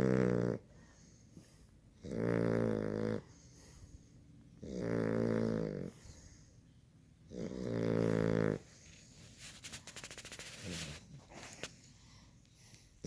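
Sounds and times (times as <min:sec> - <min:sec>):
puppy snoring: 0:00.0 - 0:06.6, 0:07.2 - 0:09.3, 0:10.0 - 0:11.7
quiet breathing: 0:00.6 - 0:02.0, 0:03.1 - 0:04.6, 0:05.6 - 0:07.0, 0:10.4 - 0:13.0.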